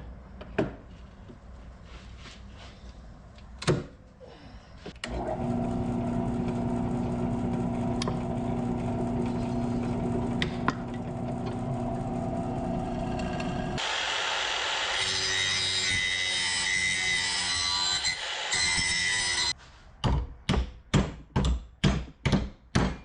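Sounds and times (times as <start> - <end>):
motor humming: 5.1 - 13.8.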